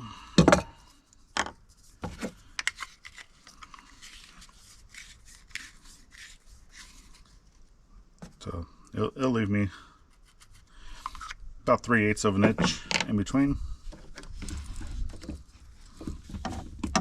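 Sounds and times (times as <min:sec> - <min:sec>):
pipe and tool knocks and clicks: 0:16.4 - 0:17.0.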